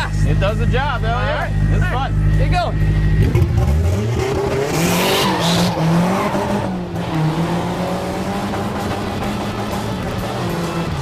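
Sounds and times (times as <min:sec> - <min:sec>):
car engine revving: 0:00.0 - 0:11.0
tire squeal: 0:04.7 - 0:11.0.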